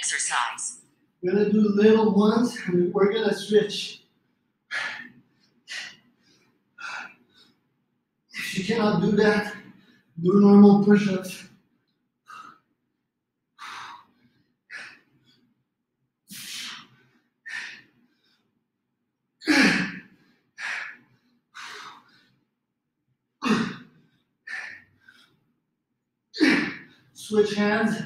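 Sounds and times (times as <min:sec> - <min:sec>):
man breathing in forceful puffs: 0:04.7 - 0:07.7, 0:13.6 - 0:15.6, 0:16.3 - 0:18.6, 0:19.5 - 0:22.5, 0:23.5 - 0:25.6.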